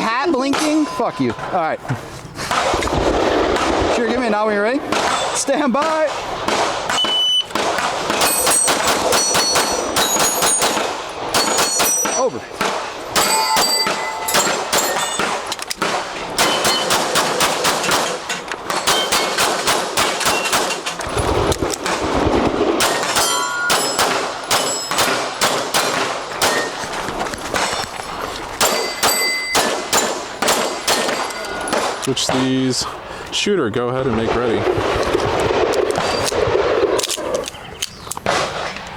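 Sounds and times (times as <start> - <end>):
steel targets ringing: 0.4 - 1.8, 8.2 - 12.5, 13.1 - 15.4, 16.4 - 17.0, 18.1 - 19.4, 22.9 - 25.4, 28.6 - 32.0
rapid pistol shots: 2.5 - 26.8, 28.6 - 32.6.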